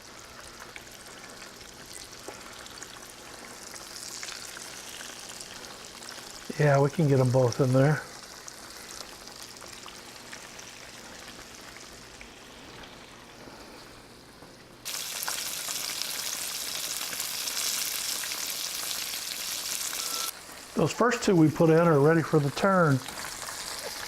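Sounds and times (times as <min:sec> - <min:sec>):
cutlets sizzling in hot oil: 0:00.0 - 0:13.9, 0:14.8 - 0:24.0.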